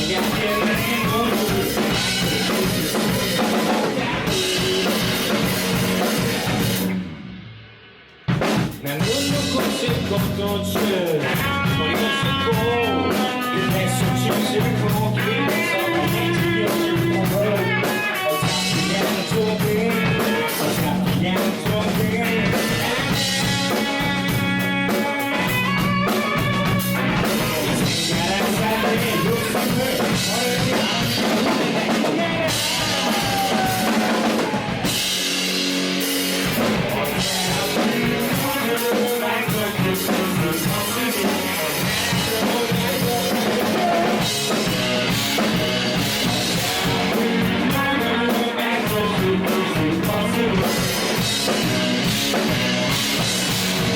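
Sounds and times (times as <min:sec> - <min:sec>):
drum kit steady beat: 0:00.0 - 0:53.9
live rock band playing: 0:00.0 - 0:53.9.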